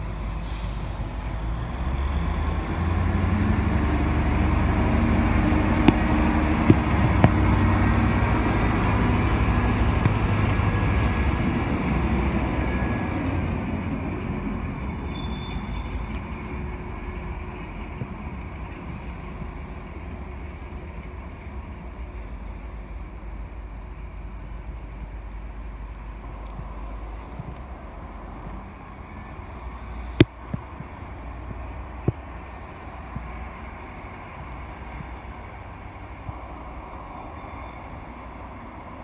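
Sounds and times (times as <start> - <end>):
diesel engine rumbling: 0.0 - 39.0
sharp knocks: 5.8 - 10.5.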